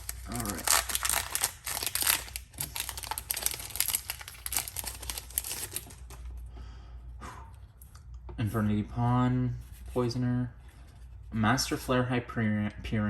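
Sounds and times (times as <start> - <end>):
foil wrapper crinkling: 0.0 - 6.2.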